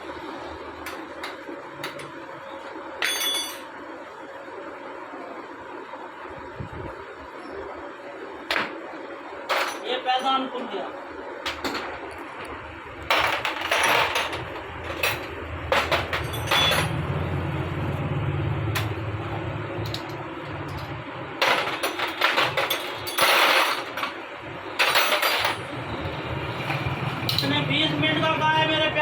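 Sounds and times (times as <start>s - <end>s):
metal tools clanking: 13.1s - 17.0s, 26.6s - 27.6s.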